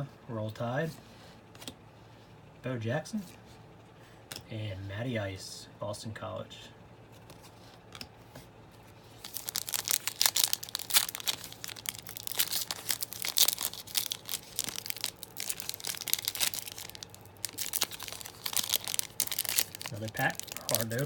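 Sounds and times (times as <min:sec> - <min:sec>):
plastic wrapper crinkling and tearing: 0:09.2 - 0:21.0.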